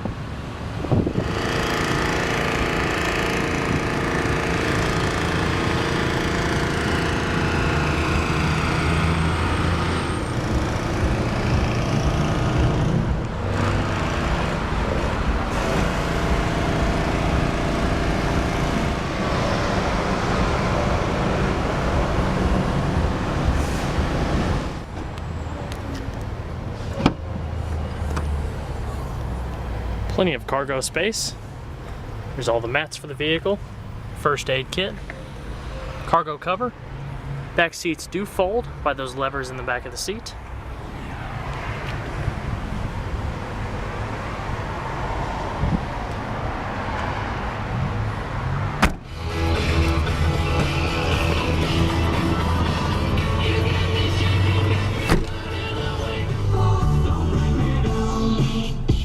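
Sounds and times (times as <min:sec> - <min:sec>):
motor vehicle engine rush: 0:00.0 - 0:58.7.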